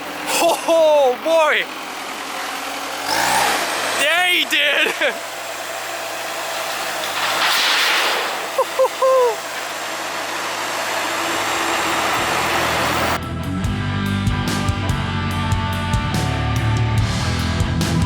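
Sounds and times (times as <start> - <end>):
diesel engine running: 0.0 - 18.0
rock music with guitars: 12.9 - 18.0.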